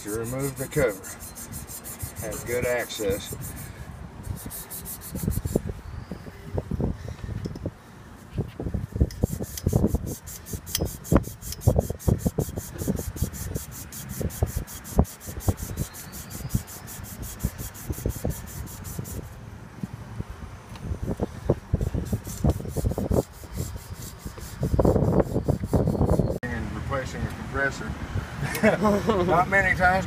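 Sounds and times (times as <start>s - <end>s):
hands rubbing and scraping metal: 0.0s - 5.7s, 8.2s - 19.4s, 21.8s - 26.4s.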